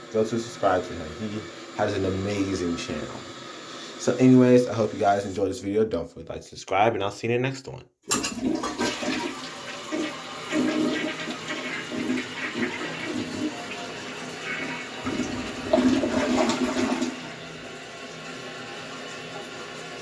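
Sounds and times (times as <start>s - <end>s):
water hissing: 0.0s - 5.4s, 8.8s - 17.6s
toilet flushing: 0.0s - 5.7s, 8.1s - 20.0s.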